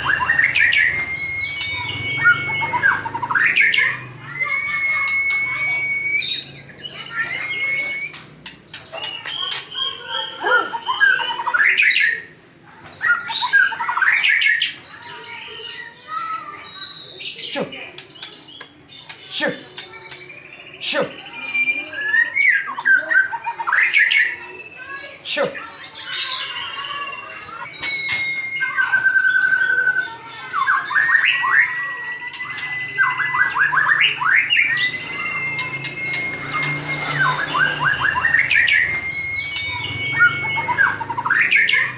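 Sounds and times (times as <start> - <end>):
bird singing whistled notes: 0.0 - 12.3, 20.0 - 25.2, 26.0 - 41.9.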